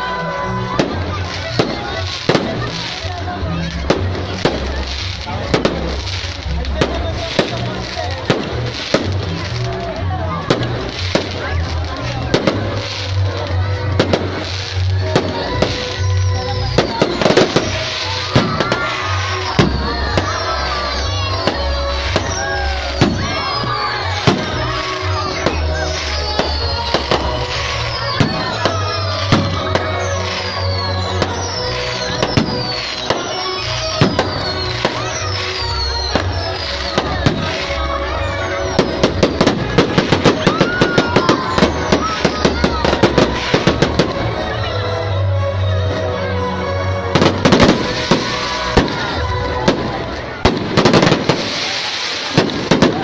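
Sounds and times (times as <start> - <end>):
fireworks bangs: 0.0 - 44.4, 47.2 - 53.0
falling firework whistles: 14.0 - 44.2, 47.2 - 53.0.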